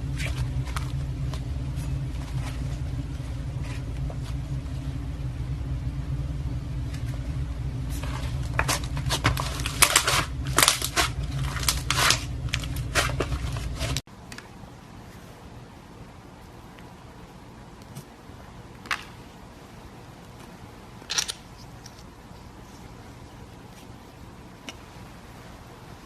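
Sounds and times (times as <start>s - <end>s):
low steady hum: 0.0s - 26.0s.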